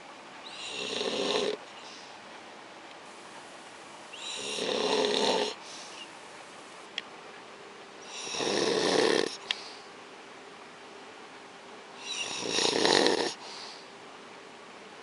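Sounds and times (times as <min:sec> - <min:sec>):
man snoring loudly: 0:00.6 - 0:01.6, 0:04.2 - 0:05.6, 0:08.2 - 0:09.4, 0:12.1 - 0:13.4.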